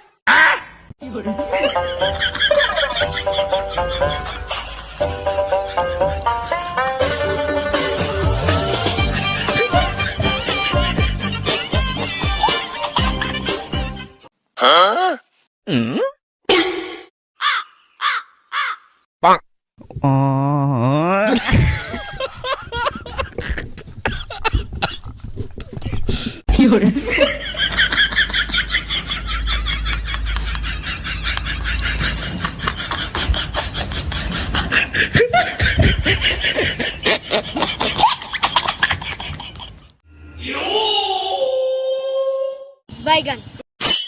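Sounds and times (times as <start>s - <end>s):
comic caw-like calls: 17.4s - 19.0s.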